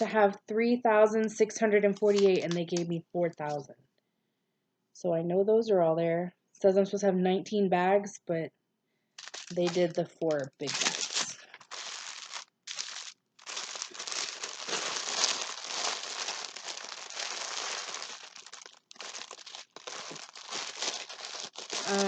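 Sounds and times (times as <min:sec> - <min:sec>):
plastic packaging crinkling: 0:01.9 - 0:03.6, 0:09.2 - 0:22.0.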